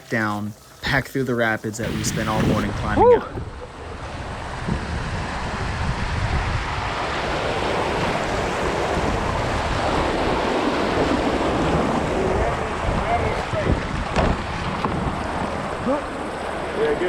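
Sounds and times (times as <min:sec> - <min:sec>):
river rapids rushing: 0:01.8 - 0:14.0
low microphone rumble: 0:01.8 - 0:16.8.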